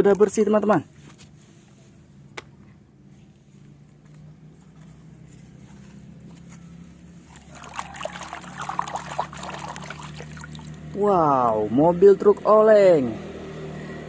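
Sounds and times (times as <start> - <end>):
water splashing and trickling: 7.2 - 11.0.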